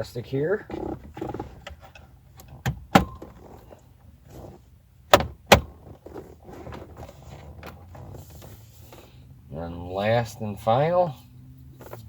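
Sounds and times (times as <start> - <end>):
handling rustle: 5.6 - 9.2.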